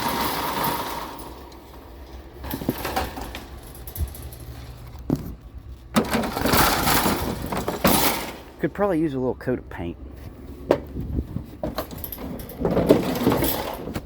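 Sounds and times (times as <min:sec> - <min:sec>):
low steady rumble: 0:00.0 - 0:14.0
metal bed frame knocks and clanks: 0:10.7 - 0:14.0.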